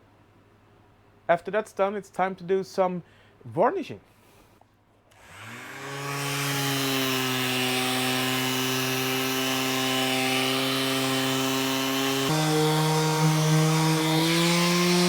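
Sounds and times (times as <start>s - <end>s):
electric sander running on wood: 5.2s - 15.0s.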